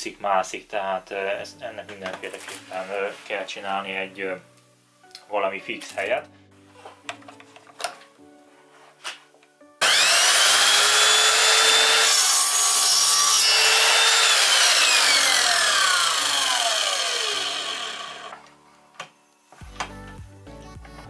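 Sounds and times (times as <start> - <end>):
mitre saw motor whine: 9.8 - 18.4
saw blade cutting wood: 9.8 - 18.4.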